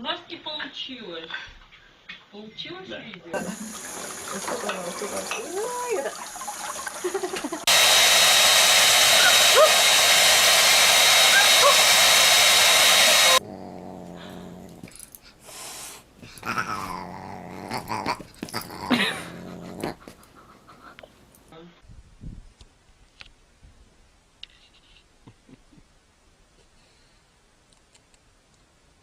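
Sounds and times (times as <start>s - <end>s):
loud steady blowing noise: 7.6s - 13.4s.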